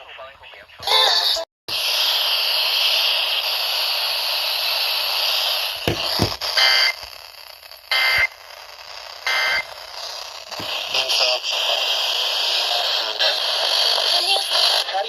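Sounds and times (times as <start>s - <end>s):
radio static hiss: 0.0s - 15.0s
short data squawks: 6.5s - 7.1s, 7.8s - 11.3s.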